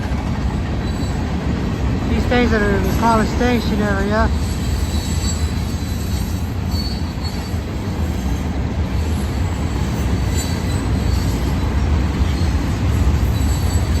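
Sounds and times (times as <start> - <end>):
train wheels rumbling on rail: 0.0 - 14.0
high-pitched wheel squeal: 4.4 - 8.4, 9.0 - 14.0.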